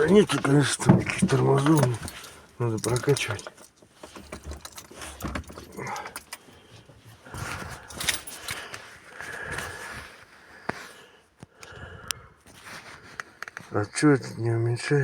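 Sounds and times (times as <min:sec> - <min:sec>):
small things clinking and rustling: 0:00.0 - 0:10.3.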